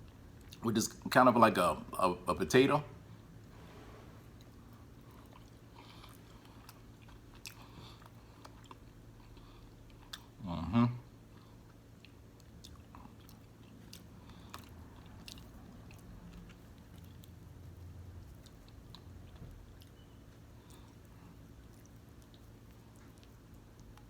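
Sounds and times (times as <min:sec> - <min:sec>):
wet chewing: 0:04.3 - 0:10.4, 0:11.2 - 0:24.0.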